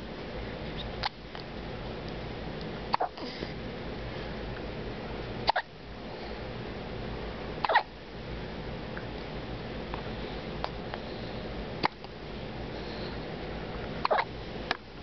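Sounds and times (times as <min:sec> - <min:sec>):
baby hiccuping: 0:02.9 - 0:03.3, 0:05.4 - 0:05.7, 0:07.6 - 0:07.9, 0:14.0 - 0:14.3.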